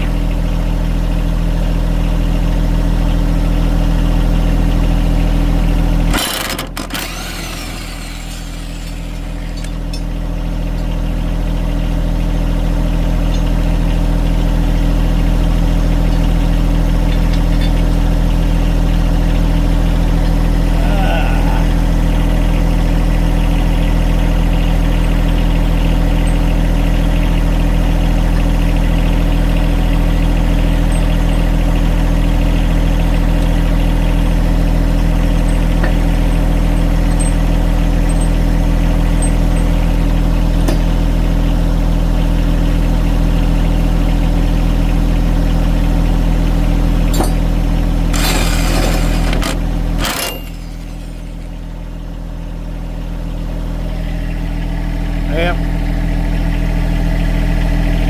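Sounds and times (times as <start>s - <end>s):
engine idling: 0.0s - 58.0s
electric hammer drill running: 6.0s - 9.7s, 48.1s - 51.6s.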